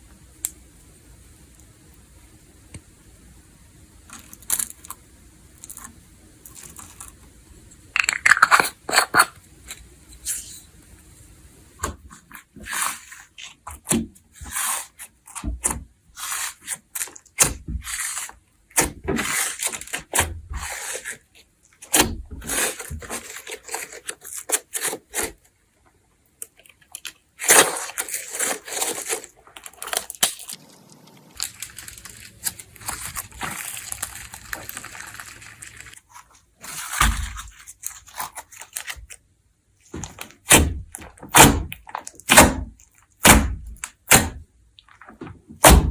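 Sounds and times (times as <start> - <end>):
slime squished by hand: 27.4 - 36.0.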